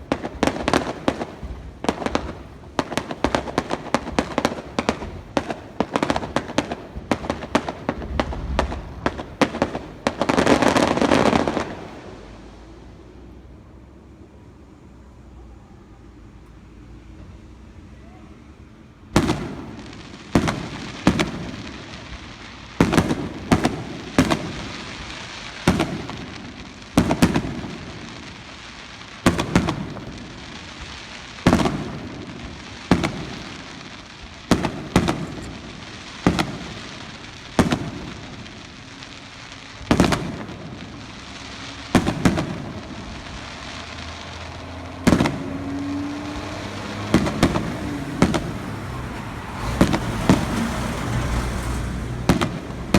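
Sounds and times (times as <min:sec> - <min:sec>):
firework shells bursting: 0:00.0 - 0:13.3, 0:19.1 - 0:52.9
echo rumble and crackle: 0:00.0 - 0:13.6.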